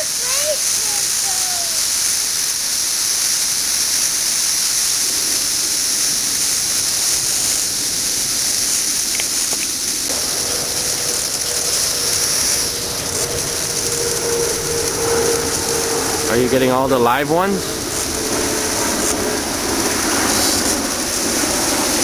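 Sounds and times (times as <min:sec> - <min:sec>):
cicadas droning: 0:00.0 - 0:22.0.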